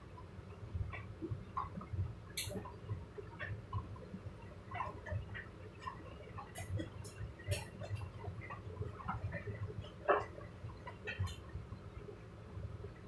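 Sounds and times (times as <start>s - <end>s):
small clicks and knocks: 10.0s - 11.5s.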